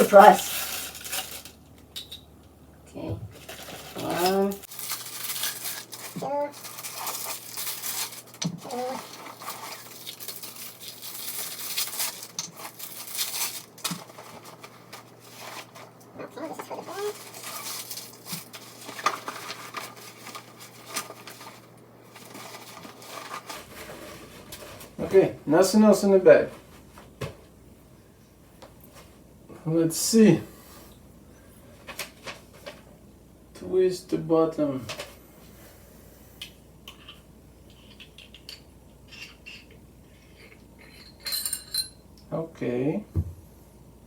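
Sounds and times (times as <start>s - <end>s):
bag rustling: 0.0s - 1.6s, 3.3s - 25.2s.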